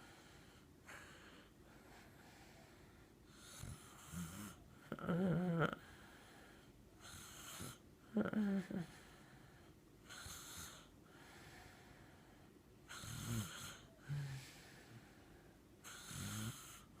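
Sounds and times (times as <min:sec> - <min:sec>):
girl snoring: 0:03.4 - 0:06.0, 0:07.0 - 0:09.1, 0:12.9 - 0:14.9, 0:15.9 - 0:16.9.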